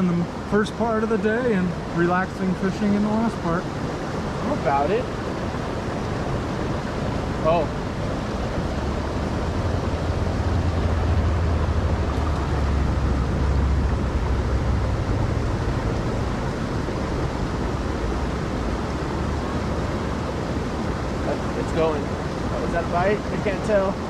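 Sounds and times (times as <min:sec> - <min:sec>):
mountain river rushing: 0:00.0 - 0:24.0
low rumble: 0:05.2 - 0:21.3.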